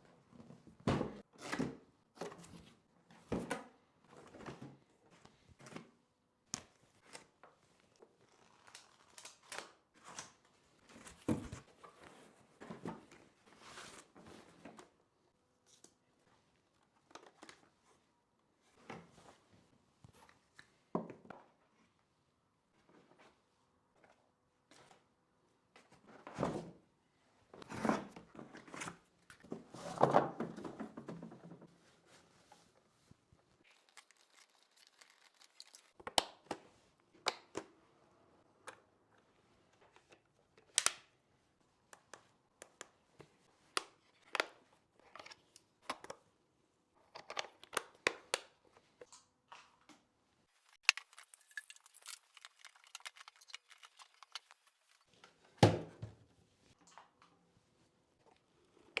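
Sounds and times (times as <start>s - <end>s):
rustling and tearing: 33.6s - 36.0s, 50.5s - 55.2s.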